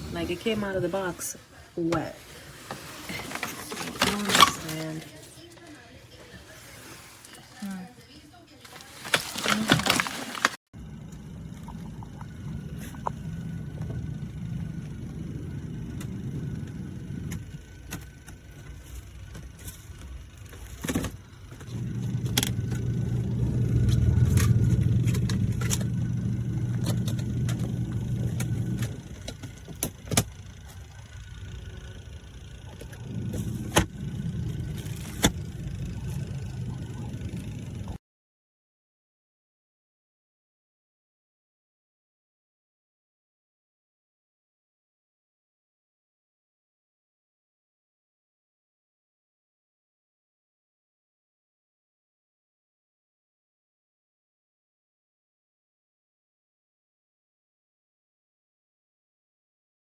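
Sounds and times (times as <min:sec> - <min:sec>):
washing machine motor humming: 0:00.0 - 0:38.0.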